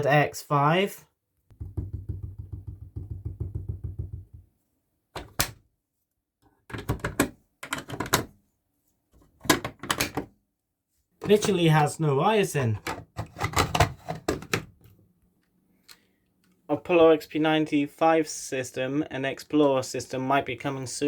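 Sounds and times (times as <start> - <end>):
plastic parts rattling: 6.7 - 8.3.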